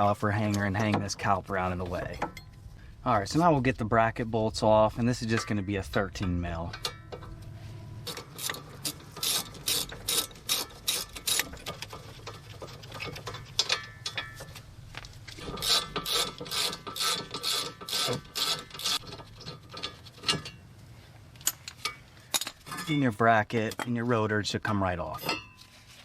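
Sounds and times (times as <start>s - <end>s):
hand ratchet clicking: 8.1s - 12.0s, 15.6s - 20.4s.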